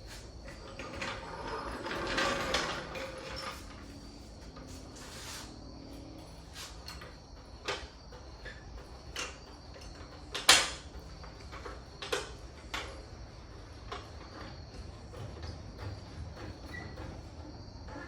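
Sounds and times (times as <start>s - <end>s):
sharp knocks and clatter: 6.8s - 18.0s.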